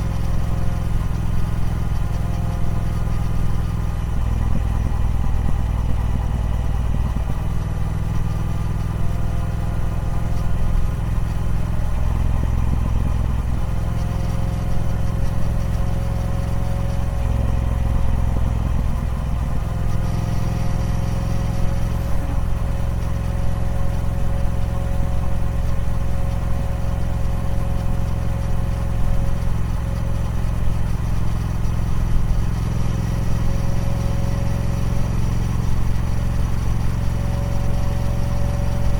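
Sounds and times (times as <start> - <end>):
motorcycle engine running: 0.0 - 38.9
thin steady whine: 8.1 - 38.9.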